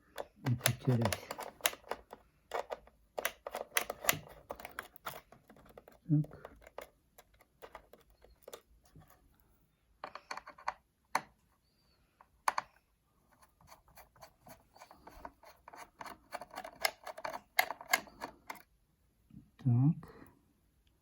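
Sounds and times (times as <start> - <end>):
screwdriver clicking and scraping: 0.0 - 8.7, 13.4 - 18.7.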